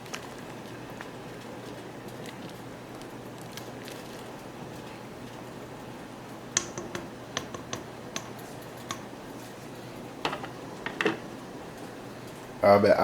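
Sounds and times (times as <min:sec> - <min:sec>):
kitchen clicks and taps: 0:06.6 - 0:09.0, 0:10.2 - 0:11.2.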